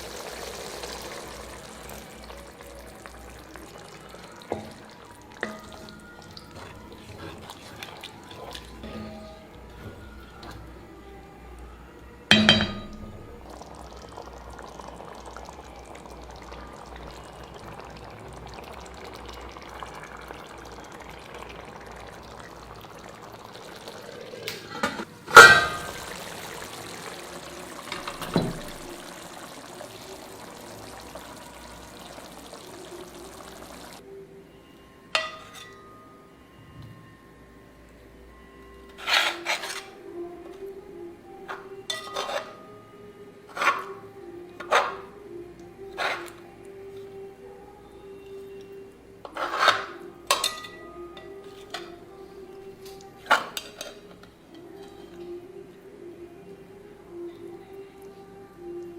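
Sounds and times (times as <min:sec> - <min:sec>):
liquid pouring into a pan: 0:00.0 - 0:09.2, 0:12.3 - 0:24.7, 0:25.3 - 0:34.0
metal utensils clanking: 0:04.6 - 0:10.7, 0:12.3 - 0:13.4, 0:24.5 - 0:29.4, 0:41.5 - 0:42.6, 0:49.3 - 0:52.0.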